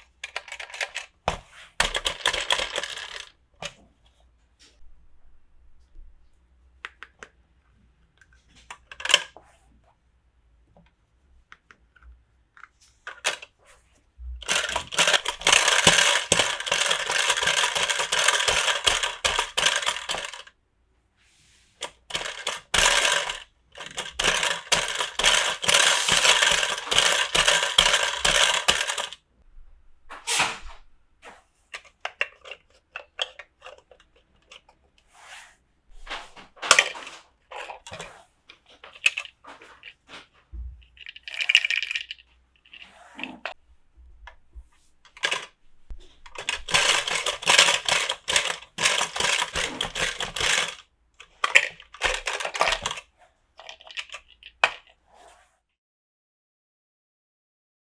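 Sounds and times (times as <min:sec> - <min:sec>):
plastic toy pieces rattling: 0:00.0 - 0:03.8, 0:08.7 - 0:09.4, 0:13.0 - 0:13.5, 0:14.4 - 0:20.5, 0:21.8 - 0:29.2, 0:31.8 - 0:34.8, 0:35.9 - 0:40.1, 0:40.8 - 0:43.6, 0:45.1 - 0:54.9.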